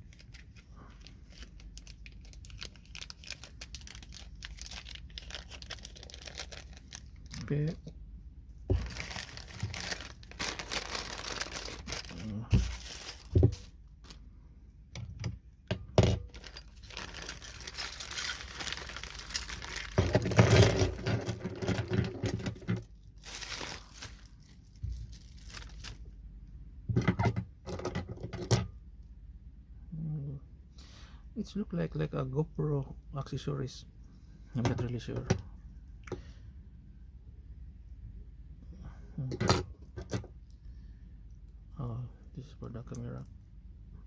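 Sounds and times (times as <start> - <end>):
plastic packaging crinkling: 0.0 - 7.8, 8.7 - 14.2, 16.2 - 26.2.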